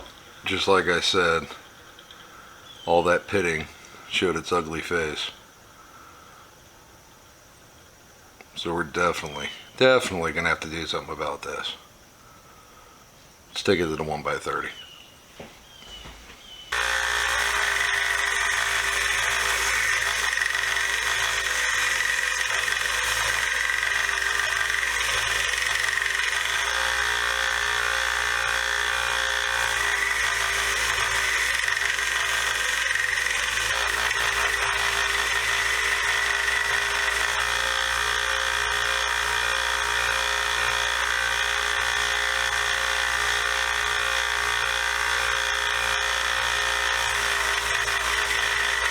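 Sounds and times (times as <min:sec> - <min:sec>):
belt sander grinding steel: 0:00.0 - 0:06.1, 0:16.7 - 0:48.9.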